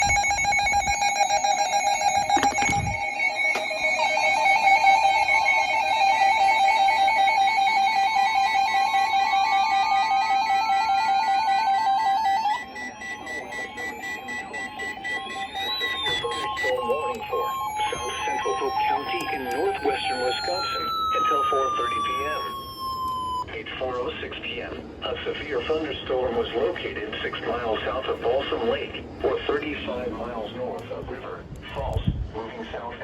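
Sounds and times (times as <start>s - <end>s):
music of sustained tones: 0.0s - 23.4s.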